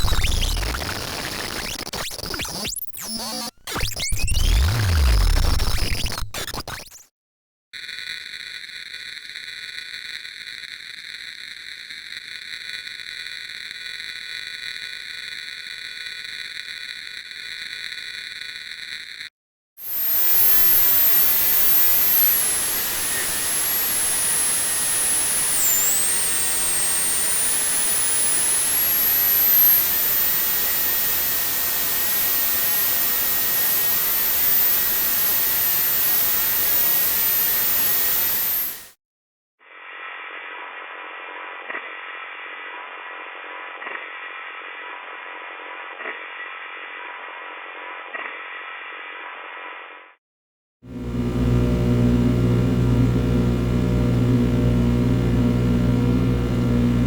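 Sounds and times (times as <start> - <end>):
muffled narrow buzz: 0.0 - 7.0, 19.8 - 38.9, 50.9 - 57.0.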